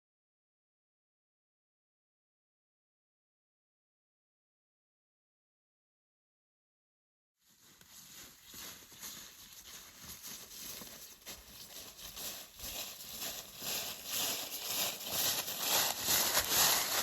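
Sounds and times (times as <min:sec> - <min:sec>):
crunching in dry leaves: 0:07.4 - 0:17.0.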